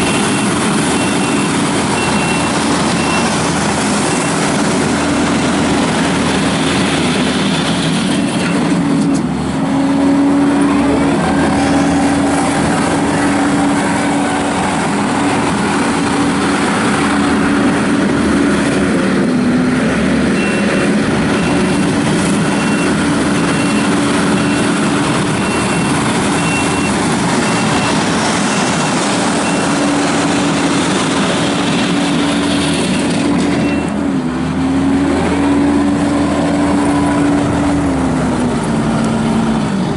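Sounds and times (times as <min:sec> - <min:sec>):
backup alarm beeping: 0:00.0 - 0:03.4, 0:20.4 - 0:29.8
diesel engine running hard: 0:00.0 - 0:39.9.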